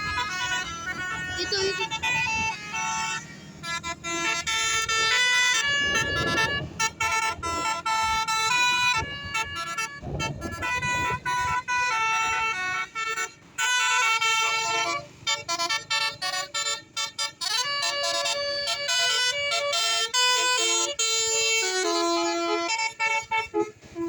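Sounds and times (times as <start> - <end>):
multi-tone bus horn melody: 0.0 - 24.0.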